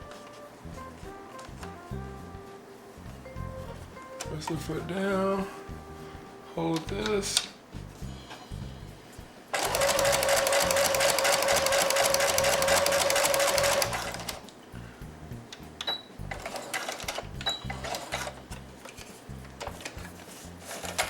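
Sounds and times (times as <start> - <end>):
sewing machine stitching: 9.6 - 14.4, 16.3 - 18.3.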